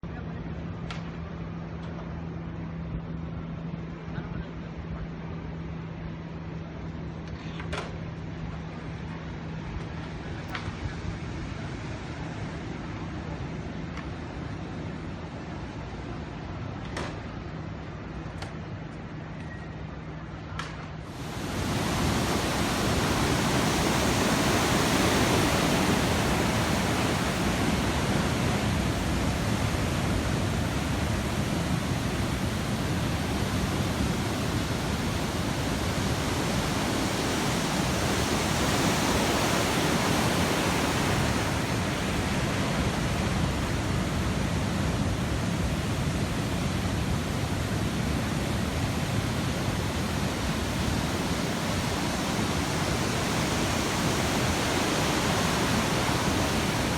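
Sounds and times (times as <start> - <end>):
ocean surf breaking on beach: 21.0 - 56.9.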